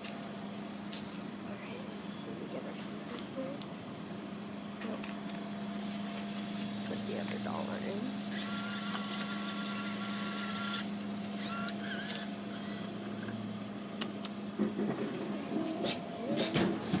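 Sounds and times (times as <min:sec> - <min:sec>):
vending machine motor humming: 0:00.0 - 0:17.0.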